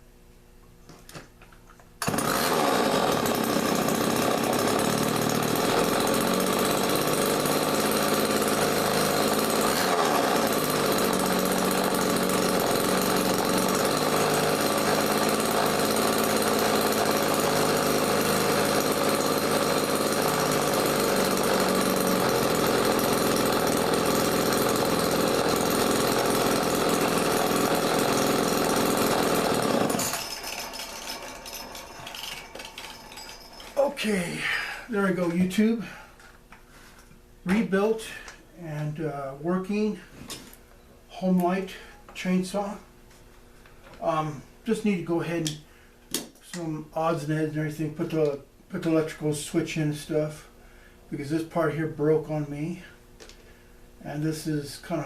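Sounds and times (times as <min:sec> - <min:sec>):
chainsaw engine running: 0:02.0 - 0:36.0.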